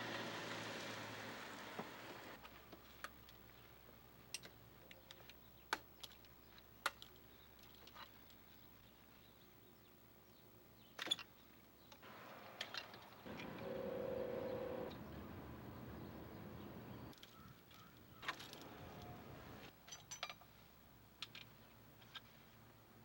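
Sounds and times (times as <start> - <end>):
short steady hum: 12.0 - 17.1.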